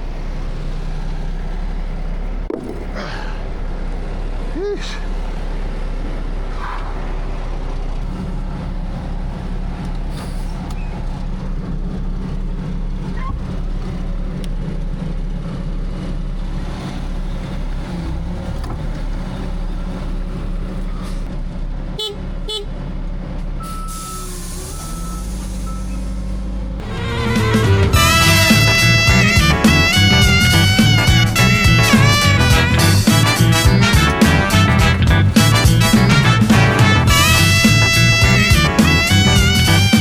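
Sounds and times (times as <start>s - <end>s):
heavy equipment engine running: 0.0s - 40.0s
short sharp sounds: 26.8s - 40.0s.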